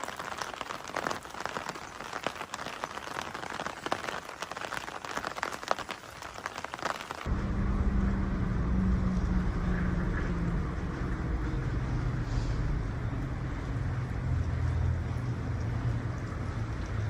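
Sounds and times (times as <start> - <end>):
vehicle engine running: 7.3 - 17.0.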